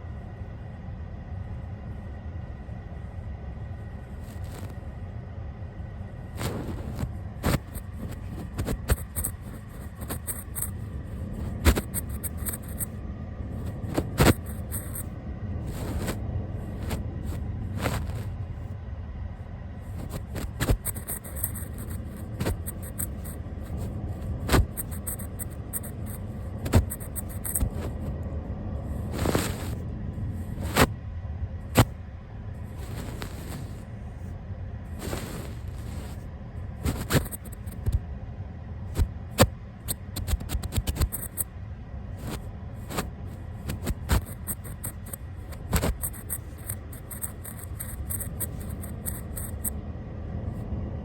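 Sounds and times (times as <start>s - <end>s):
low rumble: 3.6s - 39.5s
brush rustling on microphone: 4.2s - 4.8s, 6.4s - 13.0s, 13.6s - 18.4s, 19.9s - 28.1s, 29.0s - 29.8s, 32.7s - 33.9s, 36.8s - 38.0s, 39.9s - 41.5s, 42.2s - 49.7s.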